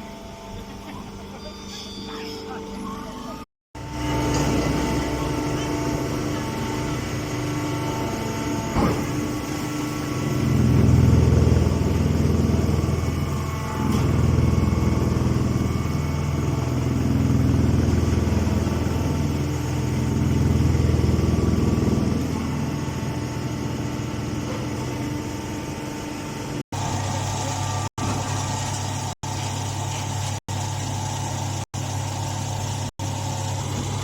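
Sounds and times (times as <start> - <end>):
hydraulic power unit humming: 0.0 - 34.0.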